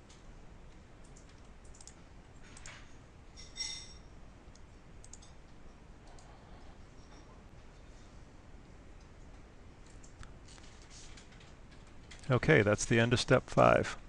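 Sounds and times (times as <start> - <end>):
mouse and keyboard clicks: 1.0 - 2.8.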